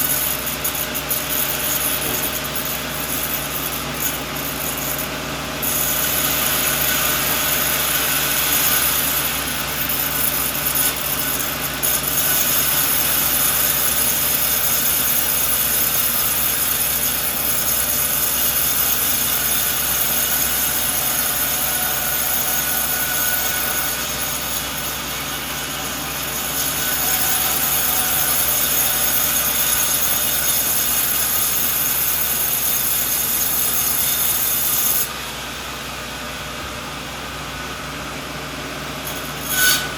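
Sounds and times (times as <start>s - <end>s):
sawmill blade cutting log: 0.0s - 36.8s, 38.7s - 39.9s.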